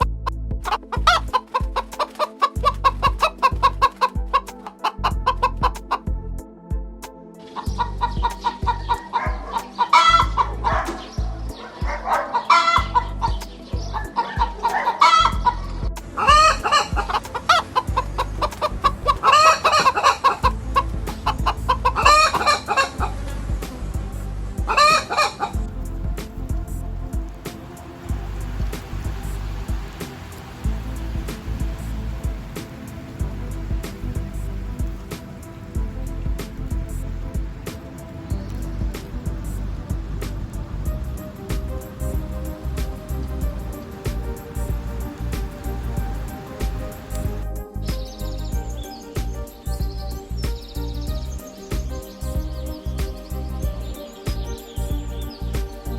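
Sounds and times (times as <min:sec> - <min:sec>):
background music with bass: 0:00.0 - 0:55.9
chickens clucking: 0:00.7 - 0:06.0, 0:07.6 - 0:15.4, 0:16.2 - 0:23.4, 0:24.7 - 0:25.6.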